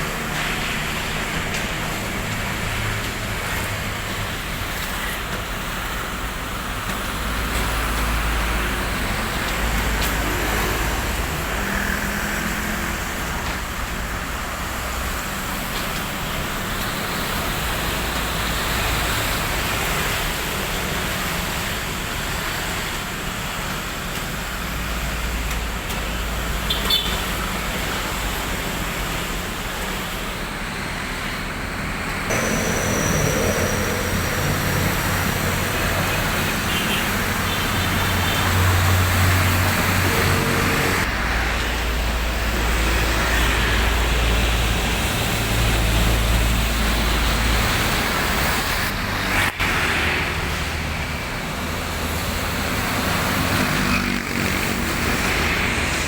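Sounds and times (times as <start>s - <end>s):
vehicle engine droning: 31.9s - 56.0s.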